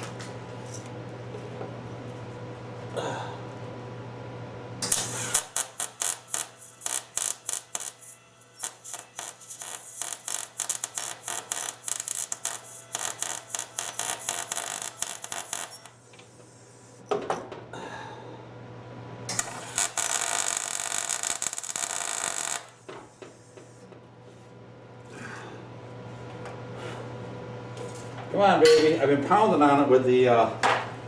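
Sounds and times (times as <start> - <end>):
welder arc crackling: 4.9 - 16.0, 19.3 - 22.8.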